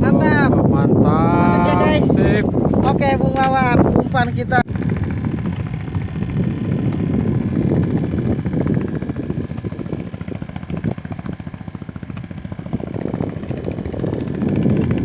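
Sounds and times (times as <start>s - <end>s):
small engine puttering: 3.6s - 15.0s.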